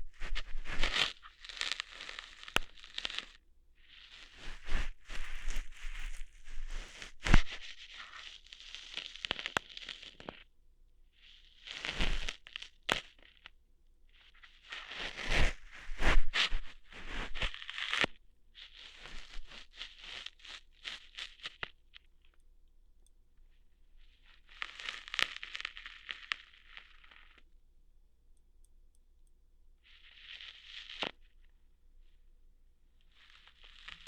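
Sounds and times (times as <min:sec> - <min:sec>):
ear hair plucking crackles: 0:00.0 - 0:10.4, 0:11.6 - 0:13.3, 0:14.6 - 0:18.2, 0:18.8 - 0:21.8, 0:24.4 - 0:27.4.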